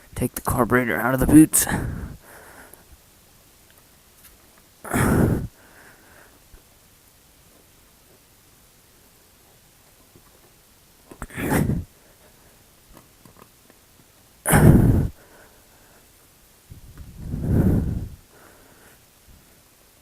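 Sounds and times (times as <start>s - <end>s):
man grunting with effort: 4.9s - 5.5s, 11.2s - 11.8s, 14.5s - 15.2s.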